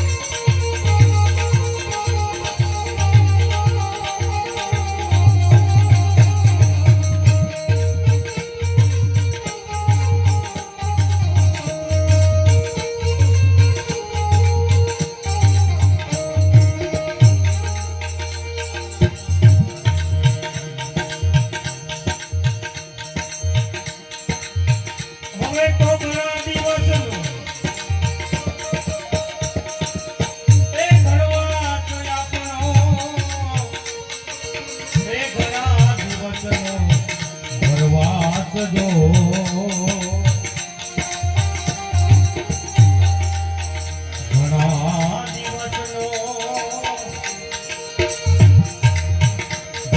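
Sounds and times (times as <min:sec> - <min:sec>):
rattling percussion: 0:00.0 - 0:49.9.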